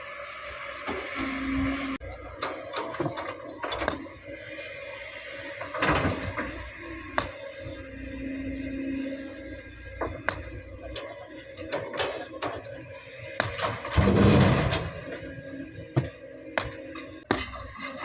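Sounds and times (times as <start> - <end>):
excavator engine running: 0.0 - 18.0
metallic knocks and clanks: 13.4 - 18.0.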